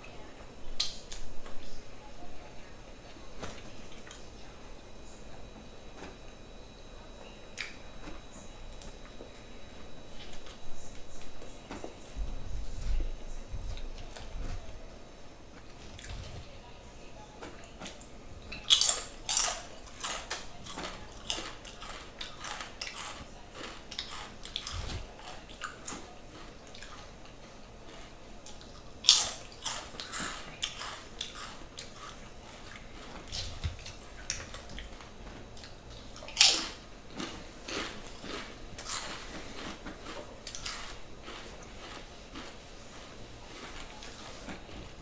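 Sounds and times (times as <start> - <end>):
crunching and smacking chews: 7.5 - 13.0, 15.6 - 16.5, 17.8 - 45.0.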